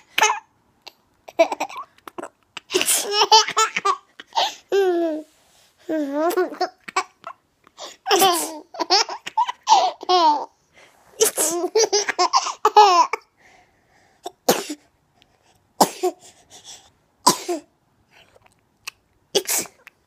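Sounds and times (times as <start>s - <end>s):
sneezes: 2.6s - 3.2s, 11.2s - 11.7s, 19.4s - 19.9s.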